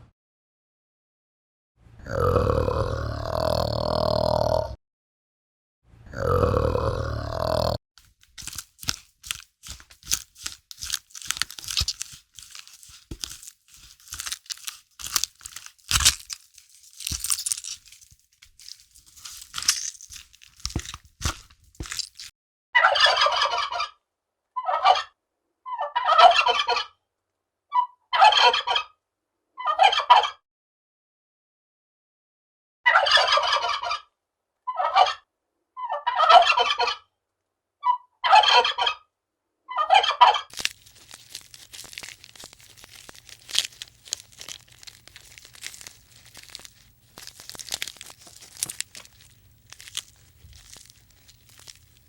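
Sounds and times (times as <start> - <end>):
clicks and crackles: 8.0 - 22.3, 40.5 - 52.0.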